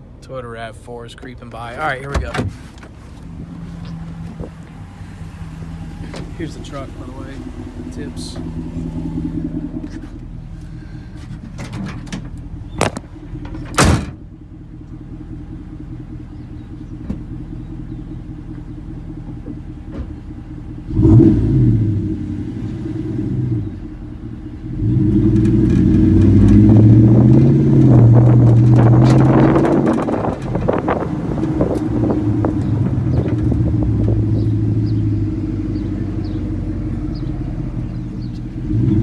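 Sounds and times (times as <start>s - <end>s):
car exhaust idling and revving: 0.0s - 39.0s
car accelerating hard: 3.3s - 10.7s, 20.7s - 39.0s.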